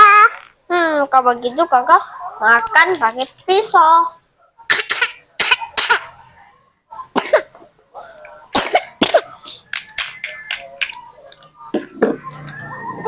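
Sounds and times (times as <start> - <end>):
child coughing: 4.7 - 6.1, 7.2 - 7.6, 8.5 - 9.6.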